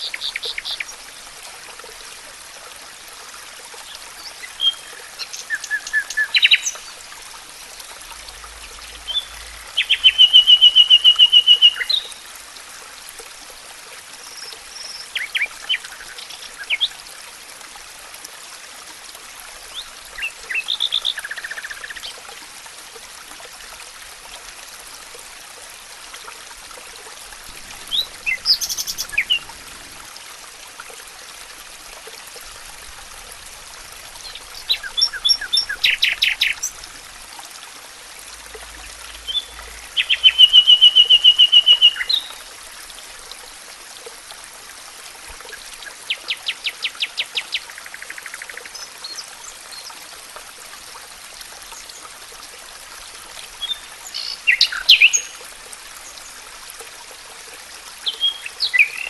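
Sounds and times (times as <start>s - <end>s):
running water: 0.0s - 59.0s
songbirds calling: 4.2s - 7.0s, 8.2s - 12.2s, 27.6s - 29.6s, 34.2s - 36.8s, 38.6s - 42.4s, 53.6s - 55.4s, 58.0s - 59.0s.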